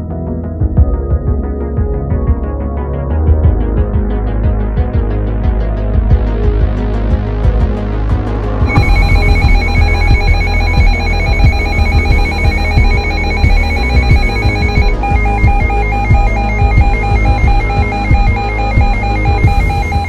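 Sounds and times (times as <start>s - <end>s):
music with heavy bass beat: 0.6s - 20.0s
electronic alert tone: 8.7s - 20.0s.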